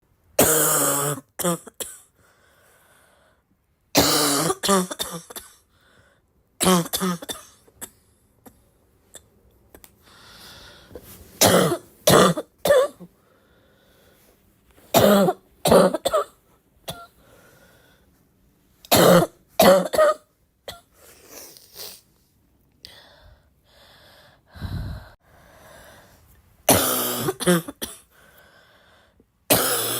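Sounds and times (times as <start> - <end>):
person coughing harshly: 0.4 - 2.1, 4.0 - 5.6, 6.6 - 8.0, 11.4 - 13.1, 14.9 - 17.2, 18.9 - 20.9, 26.7 - 28.1, 29.5 - 29.9.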